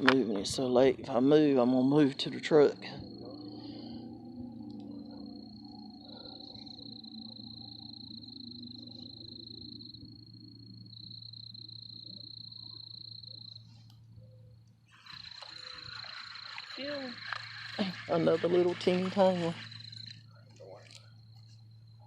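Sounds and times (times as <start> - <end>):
faint low hum: 0.0 - 22.0
high-pitched animal trill: 14.9 - 20.2.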